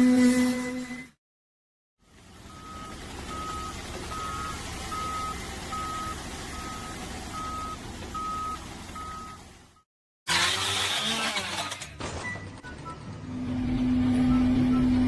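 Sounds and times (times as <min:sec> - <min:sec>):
engine running: 0:02.0 - 0:11.9, 0:12.5 - 0:15.0
vehicle reversing alarm beeping: 0:02.3 - 0:09.8, 0:12.2 - 0:13.3, 0:14.2 - 0:15.0.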